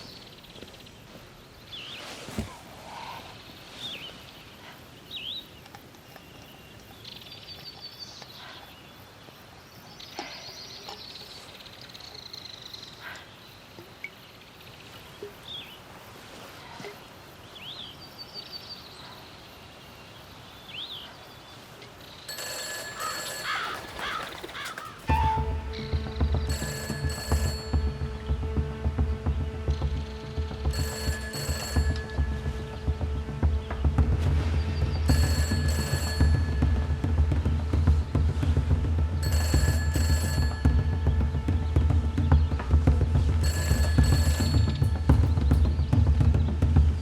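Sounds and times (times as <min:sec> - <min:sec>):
background hiss: 0:00.0 - 0:22.4
birds chirping: 0:00.0 - 0:47.0
telephone bell ringing: 0:22.3 - 0:25.4, 0:26.5 - 0:28.0, 0:30.7 - 0:32.3, 0:35.1 - 0:36.8, 0:39.2 - 0:40.9, 0:43.4 - 0:45.0.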